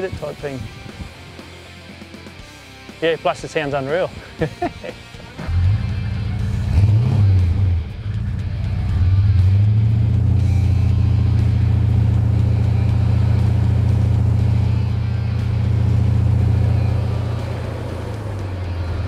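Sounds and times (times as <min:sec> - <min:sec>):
diesel engine revving: 0:05.2 - 0:19.0.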